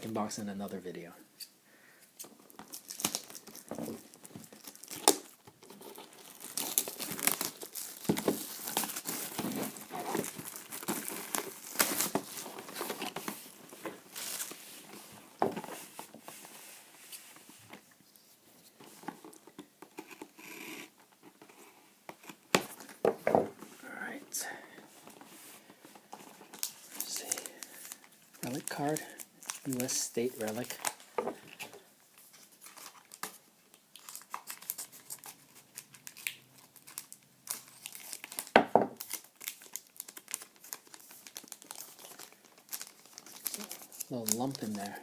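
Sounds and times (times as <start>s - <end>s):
crinkling wrappers: 2.2s - 17.4s, 23.9s - 45.0s
card packs being torn open: 2.5s - 13.3s, 26.5s - 31.0s, 32.6s - 45.0s.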